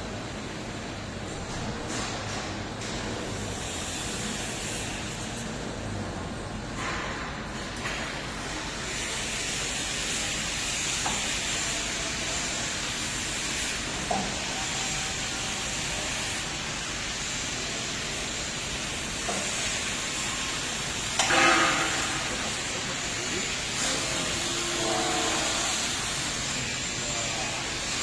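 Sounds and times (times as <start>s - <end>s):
wrapping machine hissing: 7.6s - 28.0s.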